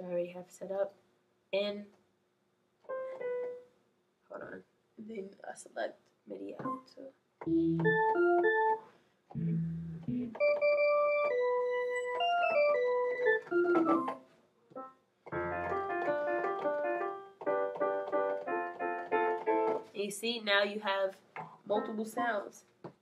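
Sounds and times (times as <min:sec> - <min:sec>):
keyboard synth melody and chords: 0:02.9 - 0:03.6, 0:07.4 - 0:14.2, 0:14.8 - 0:19.9
low bass notes: 0:07.5 - 0:08.3, 0:09.4 - 0:10.6.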